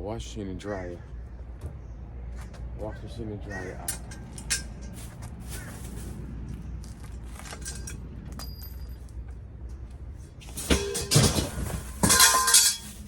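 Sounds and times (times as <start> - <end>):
metallic clattering and scraping: 3.8 - 9.2, 10.1 - 13.0.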